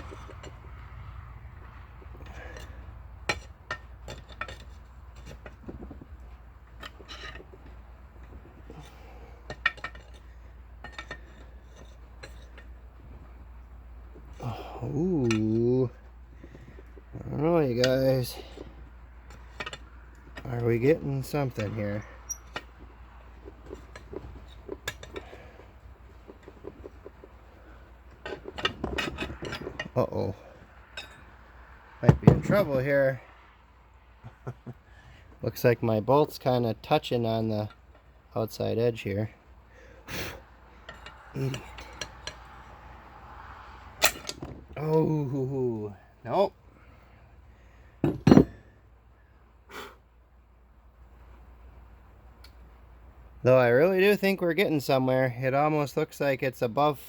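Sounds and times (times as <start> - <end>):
hand tools clinking on steel: 40.8 - 42.6.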